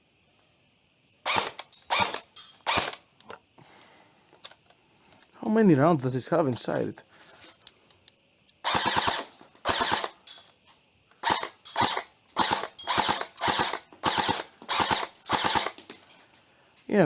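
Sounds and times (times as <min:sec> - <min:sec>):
airsoft rifle firing bursts: 0:08.7 - 0:10.2, 0:11.2 - 0:15.8.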